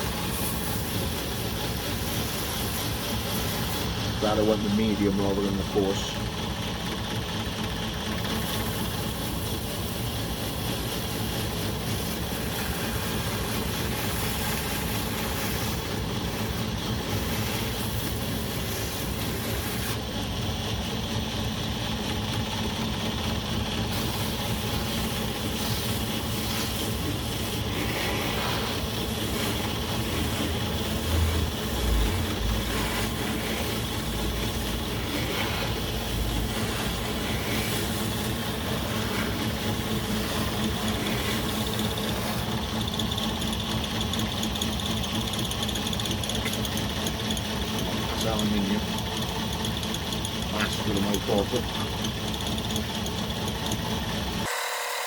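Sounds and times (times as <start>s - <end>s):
belt grinder grinding knife: 8.2s - 20.4s, 23.8s - 55.0s.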